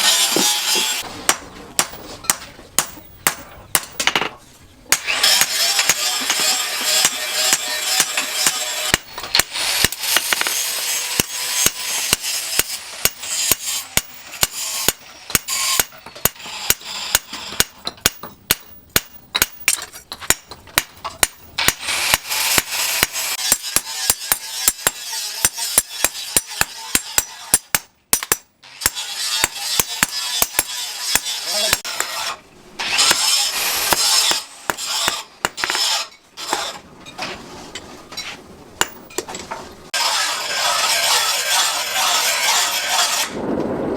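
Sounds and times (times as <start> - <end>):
hammer striking steel: 0.0 - 4.3, 4.9 - 36.8, 38.8 - 39.4
rough scraping noise: 29.0 - 38.5, 39.5 - 43.9.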